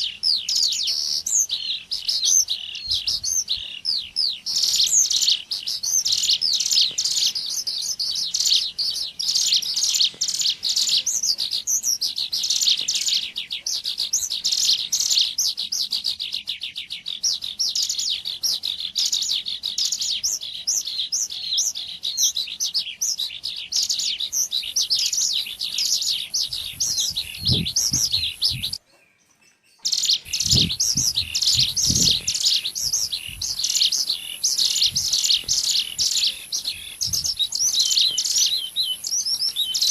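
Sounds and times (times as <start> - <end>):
bird chirps and trills: 0.0 - 39.9.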